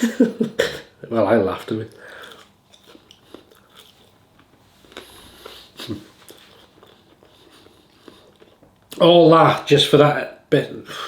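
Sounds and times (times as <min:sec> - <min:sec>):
man biting and chewing: 0:01.9 - 0:09.0.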